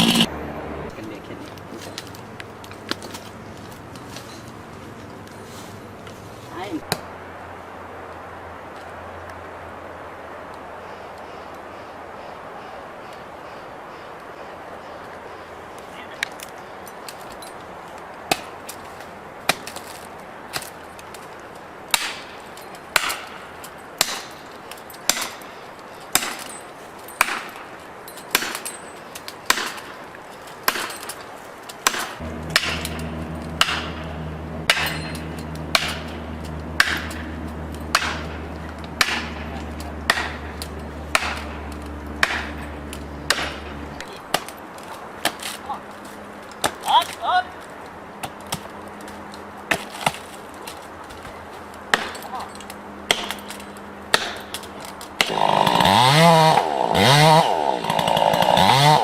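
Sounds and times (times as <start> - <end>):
low engine hum: 0.0 - 9.9, 32.2 - 44.1
blows struck into wood: 31.8 - 44.5.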